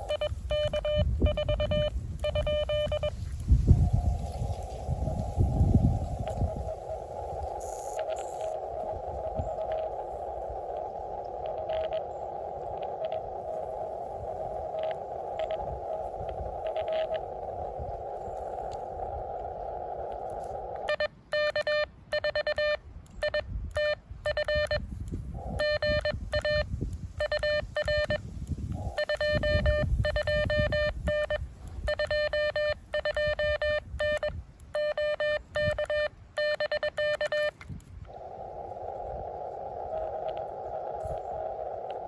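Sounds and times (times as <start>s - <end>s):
morse code tone: 0.0s - 3.2s, 14.8s - 17.2s, 20.9s - 24.8s, 25.6s - 28.2s, 28.9s - 37.5s
radio band hiss: 0.0s - 21.0s, 27.2s - 33.0s, 38.1s - 42.0s.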